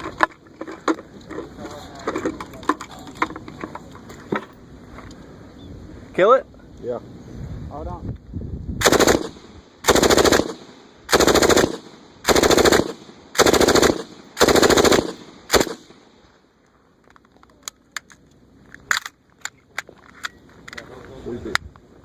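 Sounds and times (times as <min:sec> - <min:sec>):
machine gun bursts: 0:08.8 - 0:15.9.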